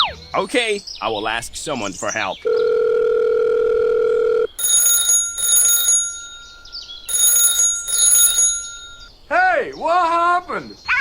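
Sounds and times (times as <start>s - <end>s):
telephone ringing: 2.4s - 9.1s
telephone dial tone: 2.5s - 6.5s, 7.1s - 9.0s.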